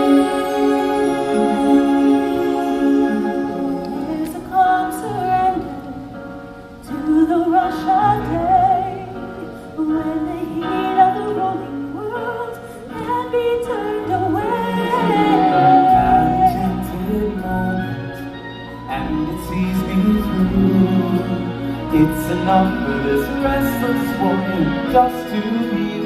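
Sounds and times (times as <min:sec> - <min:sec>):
high wavering wordless melody: 0:00.0 - 0:05.8
held orchestral chords: 0:00.0 - 0:26.0.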